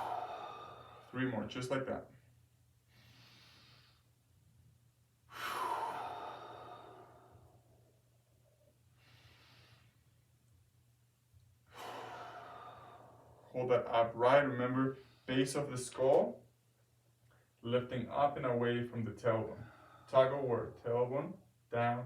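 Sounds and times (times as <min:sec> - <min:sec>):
person breathing deeply: 0:00.0 - 0:01.2, 0:02.9 - 0:04.1, 0:05.3 - 0:08.0, 0:08.9 - 0:10.2, 0:11.6 - 0:13.6, 0:19.5 - 0:20.2.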